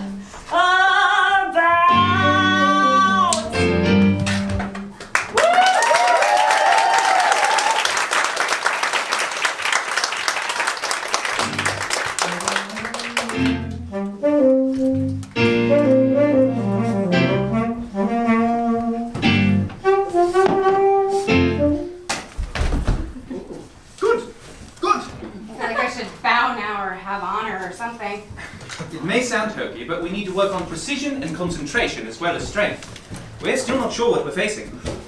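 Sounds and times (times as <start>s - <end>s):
walking bass line: 1.8s - 4.9s, 11.4s - 22.0s
big band music: 1.9s - 4.9s, 11.3s - 22.1s
saxophone and brass: 1.9s - 5.0s, 11.4s - 22.1s
person whooping: 5.3s - 7.9s.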